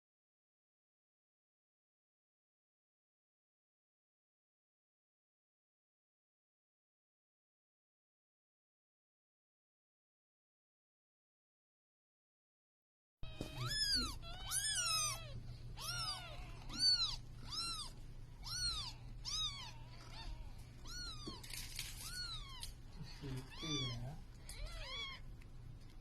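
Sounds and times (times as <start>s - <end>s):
cat meowing: 13.2s - 25.3s.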